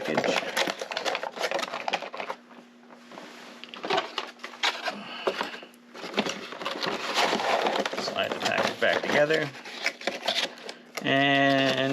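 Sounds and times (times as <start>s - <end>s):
plastic package rattling: 0.0s - 2.4s.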